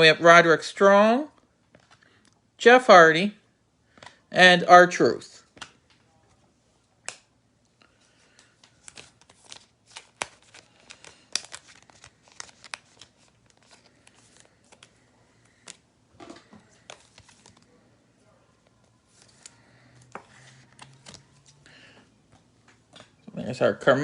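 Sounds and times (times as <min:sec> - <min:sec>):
cards rustling: 0:01.6 - 0:02.4, 0:03.9 - 0:04.3, 0:05.2 - 0:06.4, 0:07.0 - 0:23.2.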